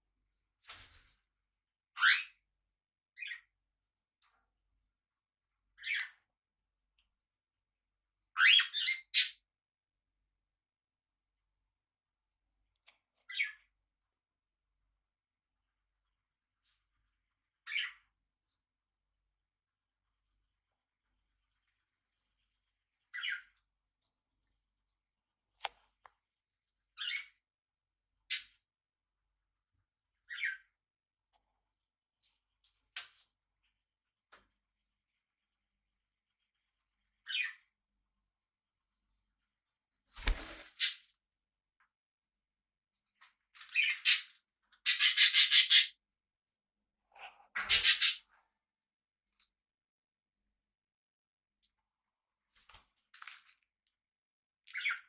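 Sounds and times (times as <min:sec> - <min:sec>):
parrots giving harsh calls: 0:47.6 - 0:48.2.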